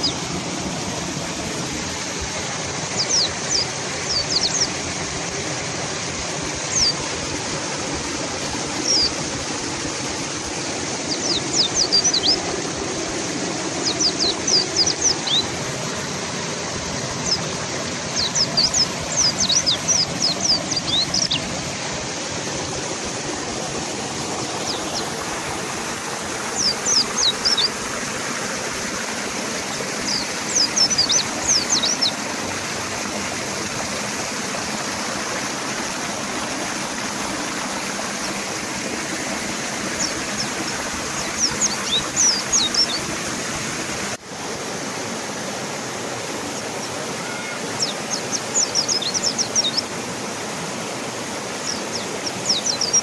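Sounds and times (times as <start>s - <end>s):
birds chirping: 0.0s - 44.6s, 46.2s - 53.0s
river water rushing: 0.0s - 53.0s.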